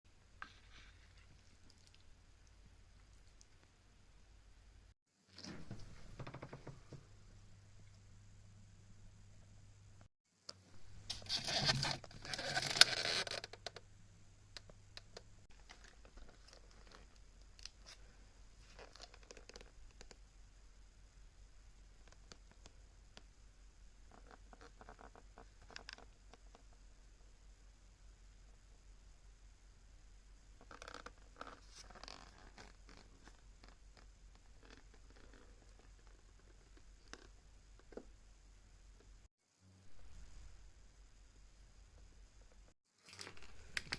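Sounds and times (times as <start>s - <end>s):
plastic packaging crinkling and tearing: 11.1s - 13.5s, 43.0s - 43.9s.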